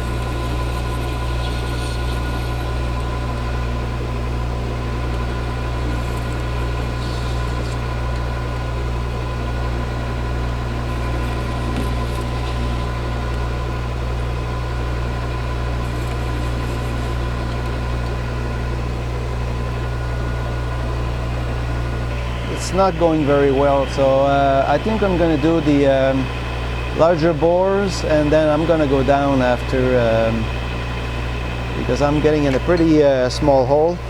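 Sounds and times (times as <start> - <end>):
metal lathe motor humming: 0.0 - 34.0
faint scratchy cutting sounds: 5.2 - 8.0, 10.8 - 13.3, 15.8 - 17.8.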